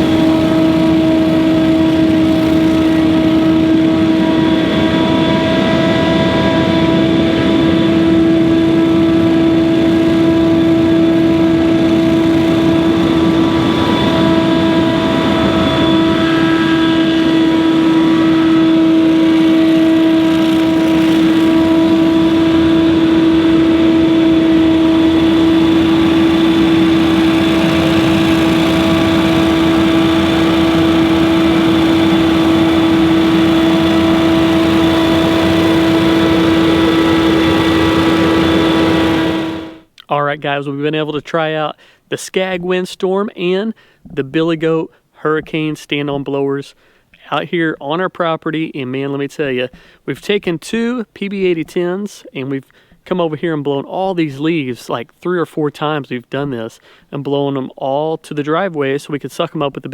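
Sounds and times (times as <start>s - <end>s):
leaf blower engine drone: 0.0s - 39.9s.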